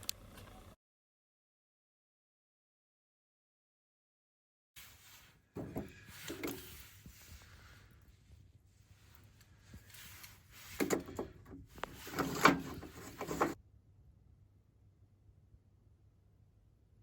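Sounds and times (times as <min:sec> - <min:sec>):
gear knocking and scraping: 0:09.9 - 0:13.6.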